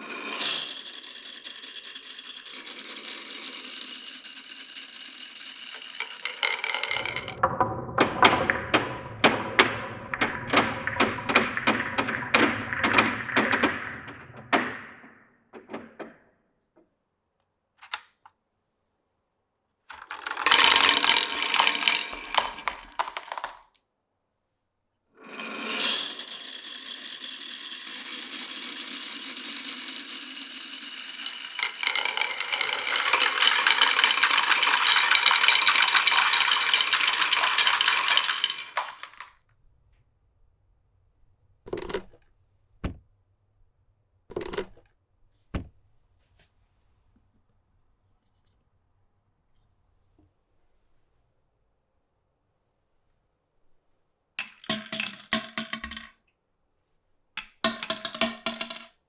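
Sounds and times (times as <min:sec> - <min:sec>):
marbles rolling on wooden track: 0:00.0 - 0:12.2, 0:17.8 - 0:18.1, 0:19.9 - 0:23.8, 0:25.7 - 0:39.3, 0:54.4 - 0:56.2, 0:57.4 - 0:59.0
marbles clacking: 0:00.4 - 0:07.4, 0:17.8 - 0:18.1, 0:19.9 - 0:23.8, 0:25.8 - 0:39.3, 0:54.4 - 0:56.1, 0:57.4 - 0:58.9
marbles rattling: 0:00.4 - 0:07.4, 0:17.8 - 0:18.0, 0:19.9 - 0:23.8, 0:25.8 - 0:39.3, 0:54.4 - 0:56.1, 0:57.4 - 0:58.9.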